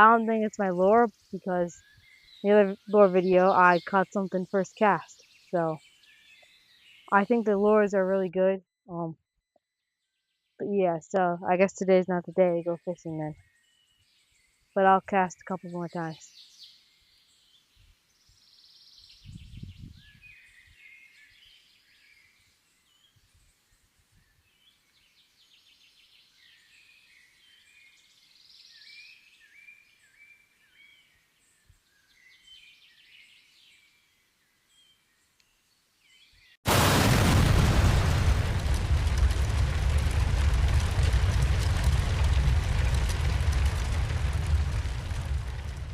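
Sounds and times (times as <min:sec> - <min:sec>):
birds chirping: 0:00.0 - 0:08.4.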